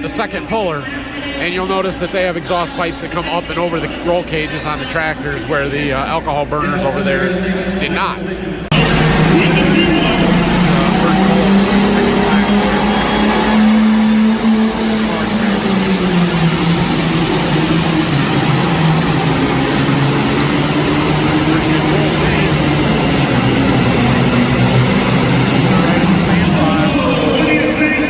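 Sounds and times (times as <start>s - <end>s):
thin high whine: 8.7s - 28.0s.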